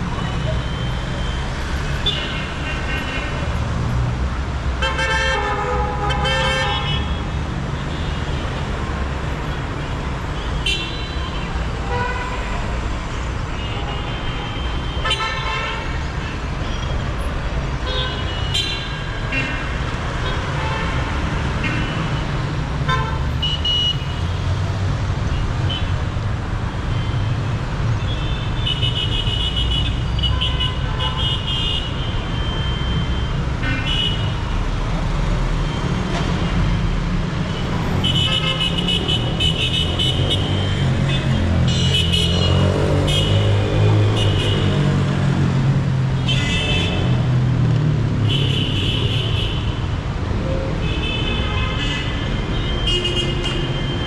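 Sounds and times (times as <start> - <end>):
traffic engines rumbling: 0.0 - 54.0
car horns honking: 38.0 - 44.8, 50.8 - 54.0.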